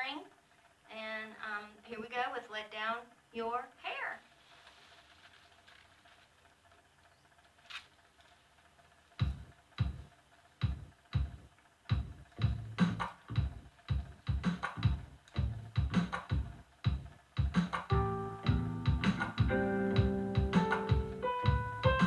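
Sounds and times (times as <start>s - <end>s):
bass notes: 9.2s - 22.0s
electronic drum beat: 9.2s - 22.0s.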